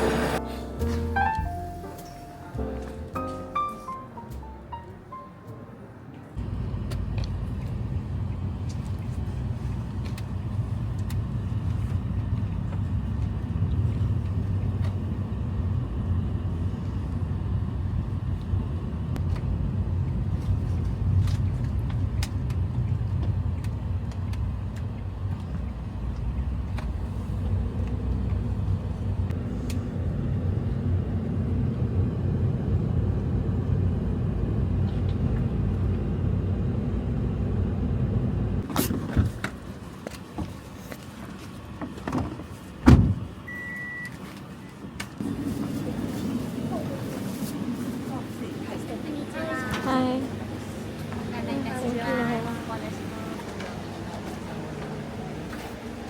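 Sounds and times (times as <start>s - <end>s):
vehicle driving rumble: 0.0s - 5.2s, 5.8s - 43.5s.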